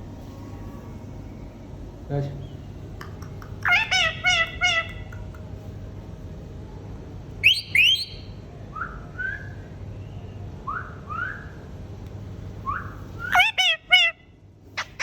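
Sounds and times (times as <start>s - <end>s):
parrot whistling: 7.4s - 9.6s, 12.7s - 14.2s.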